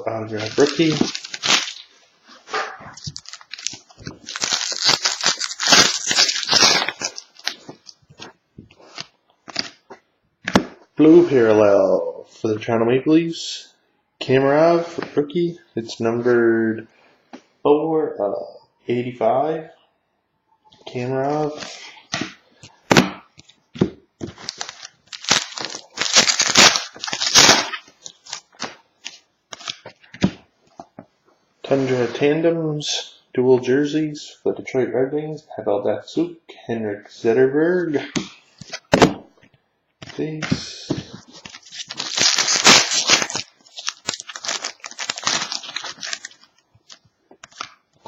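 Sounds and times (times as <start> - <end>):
wrapper crinkling: 0.1 - 2.0, 2.9 - 9.8, 24.2 - 30.0, 41.1 - 48.0
card pack tearing: 0.3 - 1.9, 3.0 - 7.8, 24.3 - 29.8, 41.3 - 47.7
cards clicking and rustling: 40.0 - 47.8.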